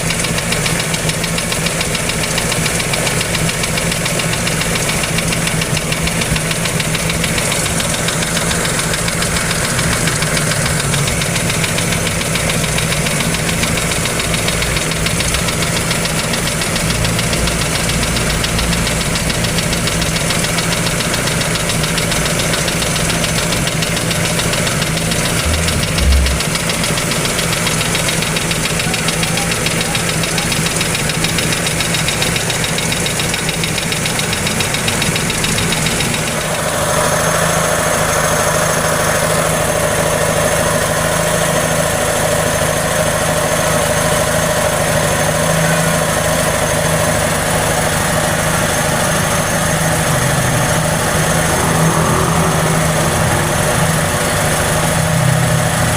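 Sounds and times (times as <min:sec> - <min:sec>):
engine idling with rapid knock: 0:00.0 - 0:55.9
steady whine: 0:24.6 - 0:27.4
low thump: 0:25.2 - 0:27.0.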